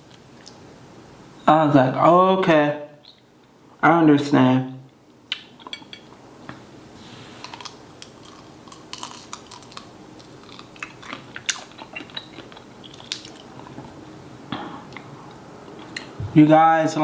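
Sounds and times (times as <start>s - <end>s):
mouth clicks and smacks: 5.3s - 5.7s, 10.6s - 13.8s
person chewing: 7.4s - 16.2s.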